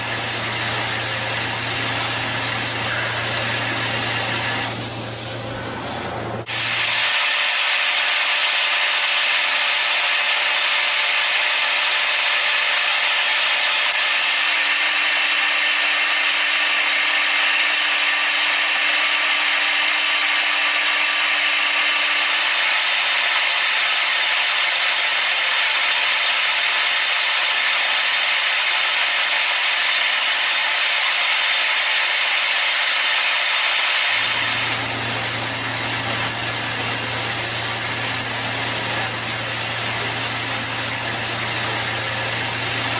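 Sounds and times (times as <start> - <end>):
machine tool cutting metal: 0.0 - 42.9
machine low steady hum: 34.2 - 42.9.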